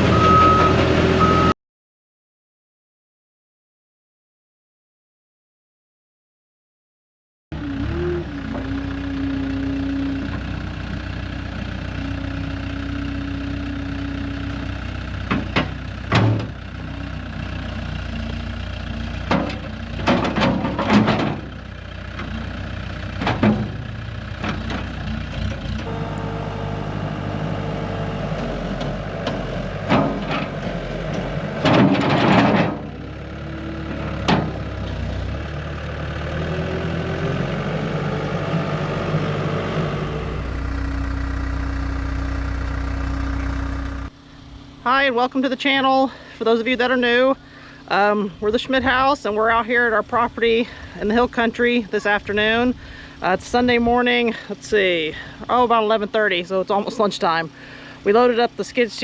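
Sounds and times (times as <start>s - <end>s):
engine idling: 7.5s - 59.0s
loud knocks and clanks: 15.3s - 16.6s, 19.3s - 21.5s, 28.8s - 33.0s.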